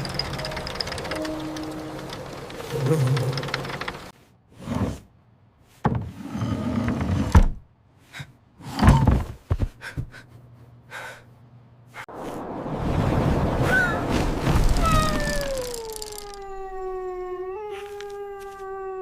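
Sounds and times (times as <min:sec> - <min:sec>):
quick clicks: 0:15.2 - 0:16.5.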